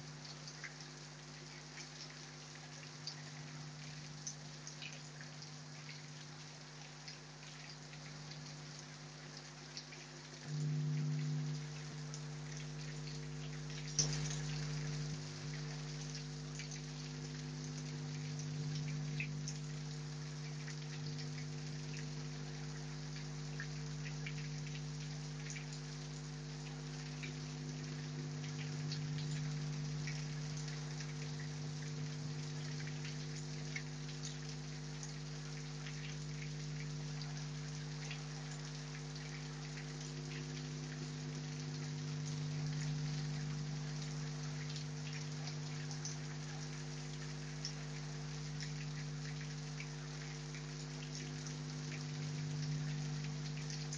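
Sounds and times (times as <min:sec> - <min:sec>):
raindrops ticking close by: 0:00.0 - 0:53.9
steady low hum: 0:00.0 - 0:53.9.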